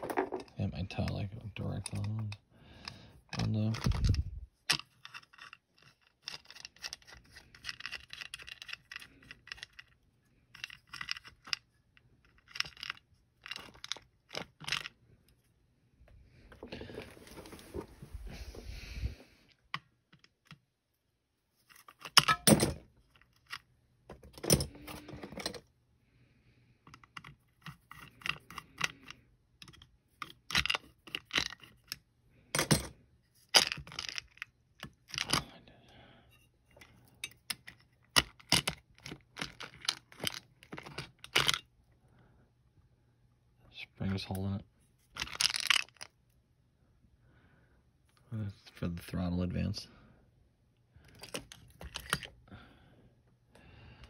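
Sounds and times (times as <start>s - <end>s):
metal parts clicking and clinking: 0.0s - 15.0s, 21.7s - 25.7s, 26.9s - 35.6s, 36.7s - 41.7s, 45.1s - 46.1s, 51.0s - 52.4s.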